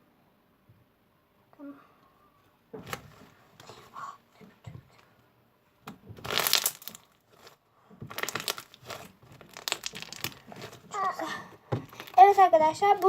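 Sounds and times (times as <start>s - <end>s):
slime crackling pops: 6.2s - 7.1s, 8.1s - 10.7s.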